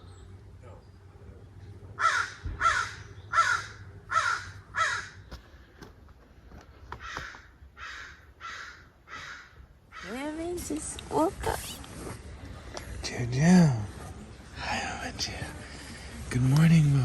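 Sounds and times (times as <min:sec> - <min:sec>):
crow cawing: 0:02.0 - 0:05.3, 0:06.9 - 0:10.3.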